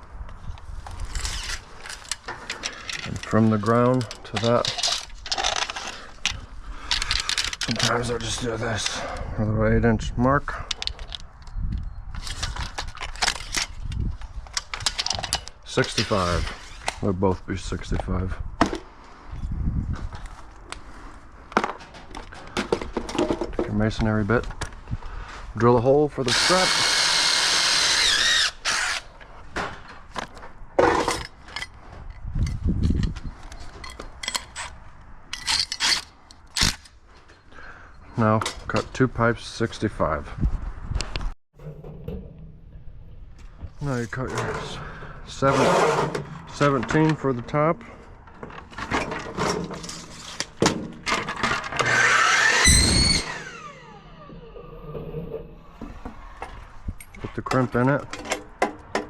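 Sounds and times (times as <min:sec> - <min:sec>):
power drill boring into masonry: 0:26.2 - 0:29.1, 0:51.6 - 0:54.5
knocks and clatters: 0:41.0 - 0:44.9
power tool cutting whine: 0:51.8 - 0:55.4.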